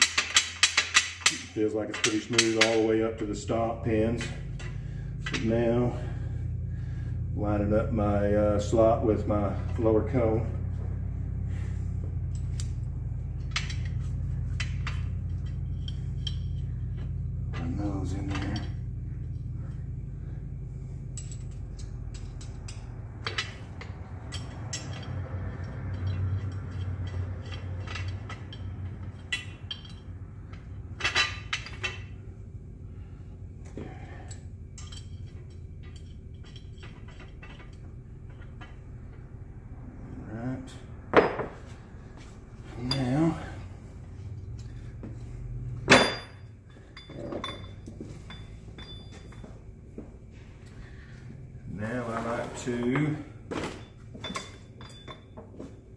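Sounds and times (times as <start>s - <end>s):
low hum: 0.0s - 55.9s
steel parts clinking: 0.0s - 55.9s
ringing metal clank: 8.6s - 20.4s, 33.8s - 39.3s, 42.7s - 49.8s, 52.1s - 55.7s
steel tool parts clinking: 12.2s - 19.9s, 21.1s - 32.2s, 33.8s - 38.9s, 51.8s - 55.6s.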